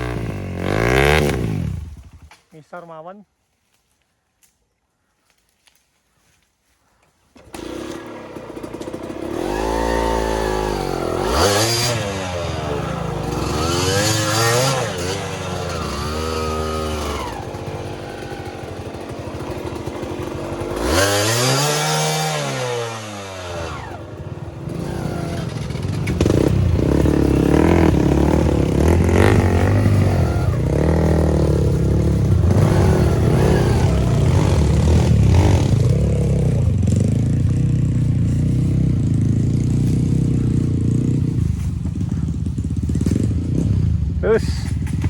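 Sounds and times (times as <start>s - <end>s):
small petrol engine idling: 7.4s - 11.4s, 15.2s - 21.4s.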